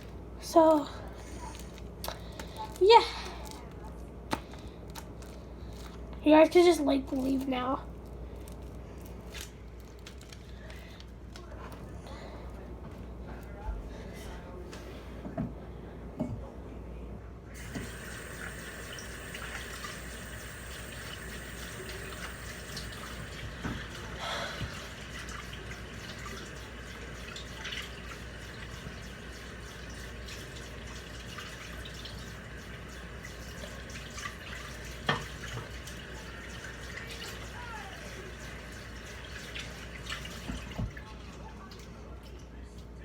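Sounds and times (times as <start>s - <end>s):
tap running into a sink: 17.6s - 36.0s, 40.1s - 41.1s.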